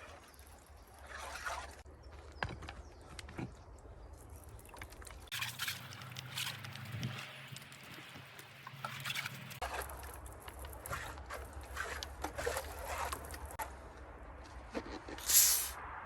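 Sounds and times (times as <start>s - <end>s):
small water splashes: 0.0s - 1.9s, 3.6s - 13.6s.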